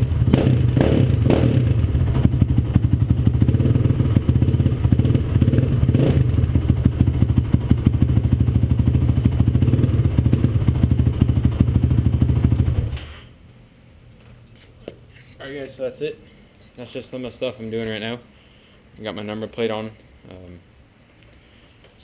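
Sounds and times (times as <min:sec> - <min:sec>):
engine idling: 0:00.0 - 0:12.9.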